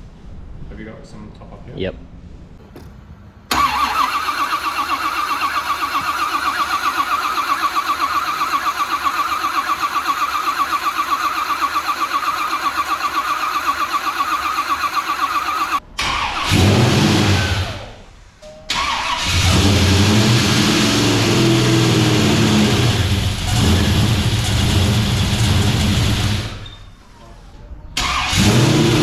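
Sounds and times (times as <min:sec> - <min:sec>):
starter cranking engine: 0:03.5 - 0:16.7.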